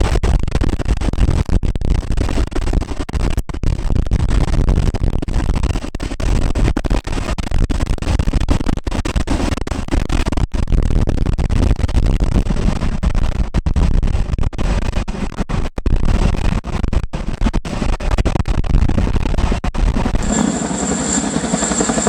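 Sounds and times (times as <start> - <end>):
helicopter rotor and engine: 20.2 - 22.0.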